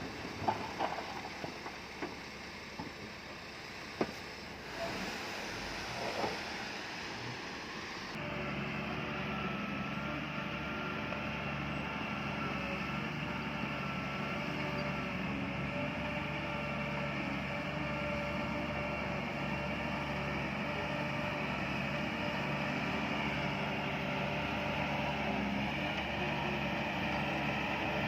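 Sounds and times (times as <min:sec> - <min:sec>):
heavy diesel engine running: 0:00.0 - 0:28.0.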